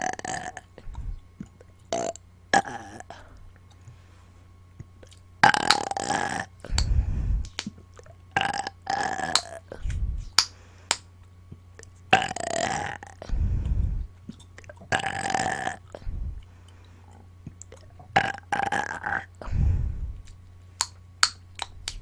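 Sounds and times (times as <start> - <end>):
woman burping: 0.0 - 0.7, 1.9 - 3.1, 5.4 - 6.5, 12.1 - 13.2, 14.9 - 15.8.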